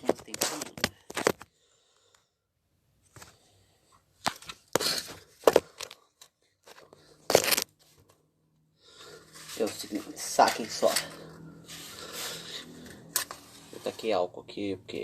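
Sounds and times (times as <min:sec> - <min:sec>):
cardboard crunching and tearing: 0:07.3 - 0:07.7.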